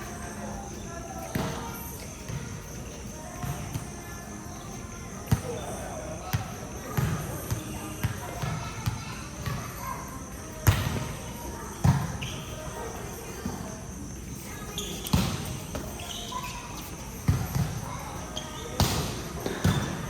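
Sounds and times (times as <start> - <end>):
faint voices: 0.0 - 20.0
basketballs bouncing on gym floor: 6.3 - 9.6, 10.6 - 11.1, 11.8 - 12.1, 17.3 - 17.9, 18.7 - 20.0.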